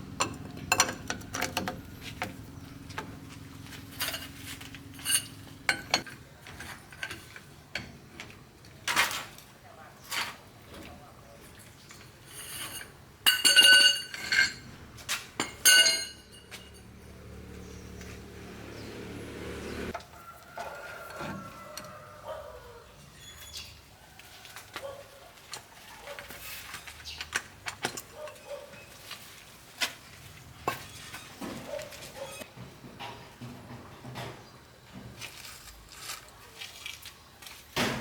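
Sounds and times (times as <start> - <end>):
metal clinking and ringing: 0.2 - 1.8, 3.9 - 6.1, 12.3 - 14.7, 15.4 - 17.0.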